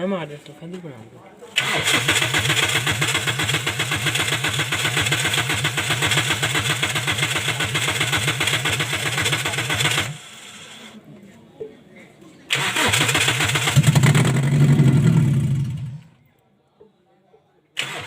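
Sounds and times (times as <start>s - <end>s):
car engine cranking on starter: 1.6s - 10.9s, 12.5s - 16.1s, 17.8s - 18.0s.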